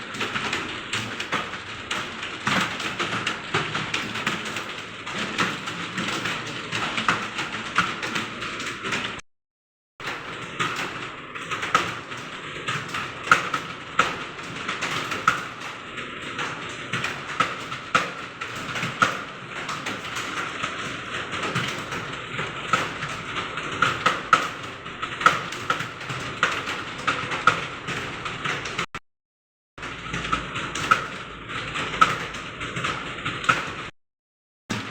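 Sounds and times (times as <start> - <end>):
fast typing on keyboard: 0.0 - 9.2, 10.3 - 28.9.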